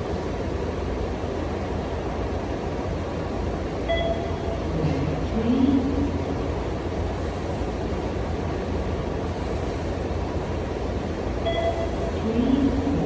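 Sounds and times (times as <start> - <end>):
short electronic beep: 3.9 - 4.4, 11.4 - 12.0.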